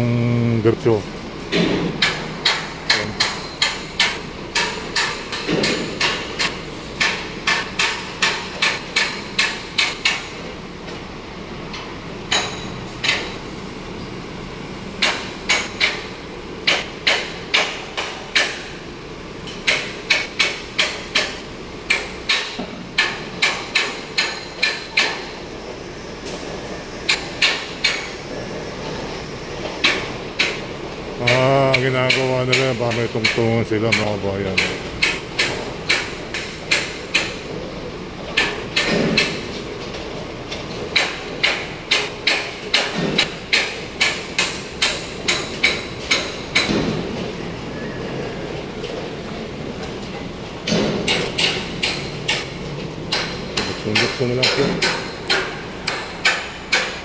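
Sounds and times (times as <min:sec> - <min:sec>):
hammer blows ringing: 0:31.2 - 0:37.4, 0:50.7 - 0:57.0.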